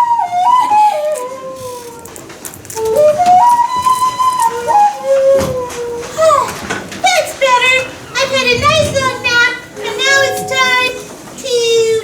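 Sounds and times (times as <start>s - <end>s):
flute-like instrument playing a tune: 0.0s - 6.8s, 9.1s - 11.4s.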